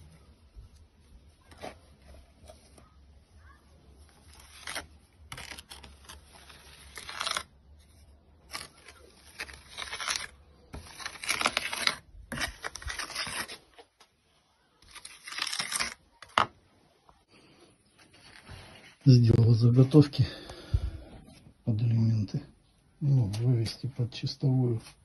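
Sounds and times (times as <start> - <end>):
rough scraping: 8.4 - 13.7.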